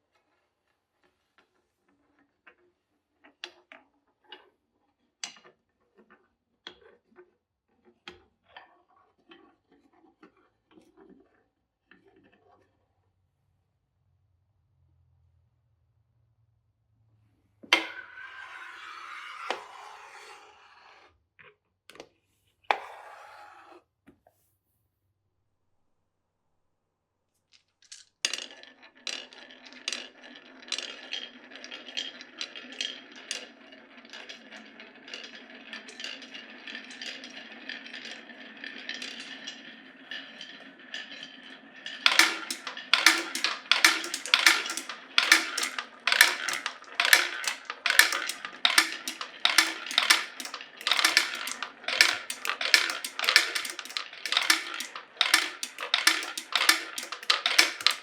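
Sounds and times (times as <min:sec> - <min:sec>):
marbles rolling on wooden track: 0:17.7 - 0:21.1, 0:22.7 - 0:23.8, 0:27.8 - 0:58.0
rapid wooden clacks: 0:42.1 - 0:58.0.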